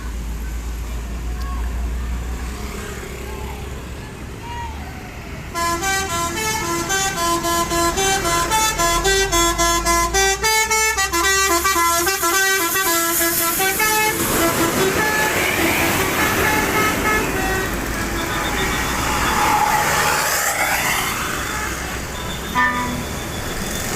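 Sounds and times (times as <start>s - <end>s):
broad rush of noise: 0.0s - 9.6s, 11.5s - 23.9s
multi-tone air horn melody: 5.5s - 23.2s.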